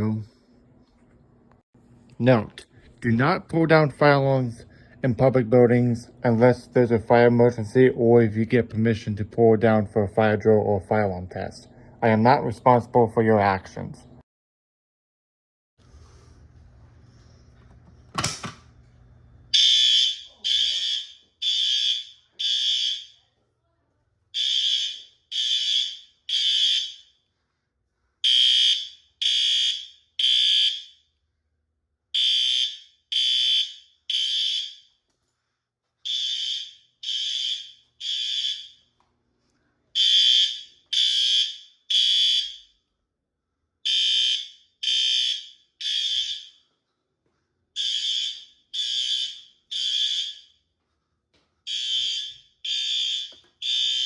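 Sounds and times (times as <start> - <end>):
fire alarm horn blasts: 19.5 - 23.2, 24.4 - 27.2, 28.2 - 31.1, 32.2 - 34.9, 36.0 - 38.8, 40.0 - 42.8, 43.9 - 46.6, 47.8 - 50.6, 51.7 - 54.0.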